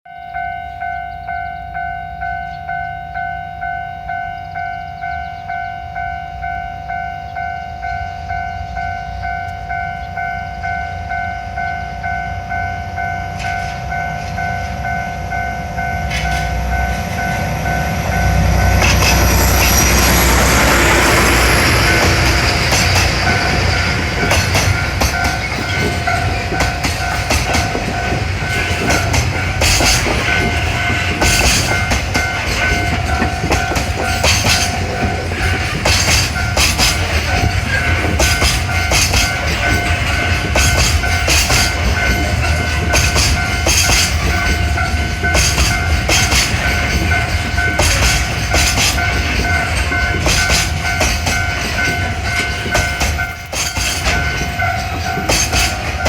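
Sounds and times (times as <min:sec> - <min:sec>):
level crossing warning bell: 0:00.1 - 0:56.0
diesel locomotive engine rumble: 0:00.3 - 0:56.0
wheels clacking over rail joints: 0:12.5 - 0:56.0.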